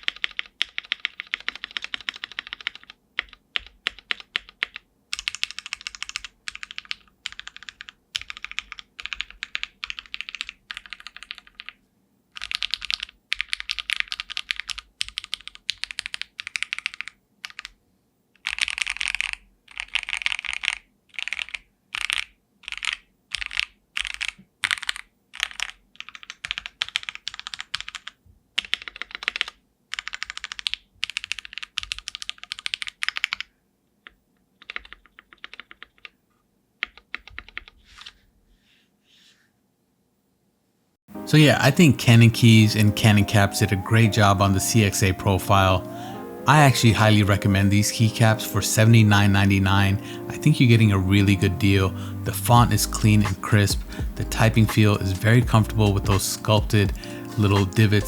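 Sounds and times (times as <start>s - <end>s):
typing on mechanical keyboard: 0.0s - 17.8s, 18.4s - 36.2s, 36.8s - 38.2s.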